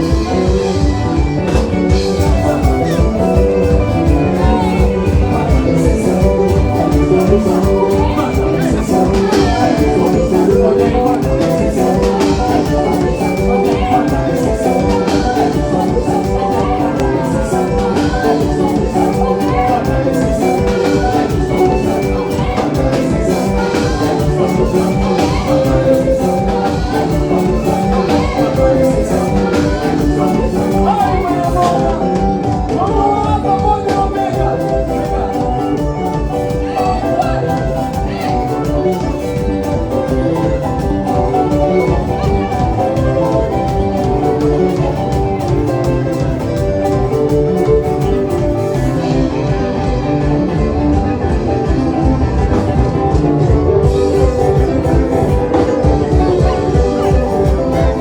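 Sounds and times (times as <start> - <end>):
upbeat band music: 0.0 - 58.0.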